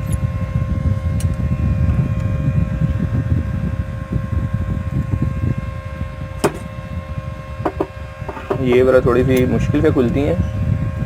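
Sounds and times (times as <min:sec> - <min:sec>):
faint constant hum: 0:00.0 - 0:11.0
steady low rumble: 0:00.0 - 0:11.0.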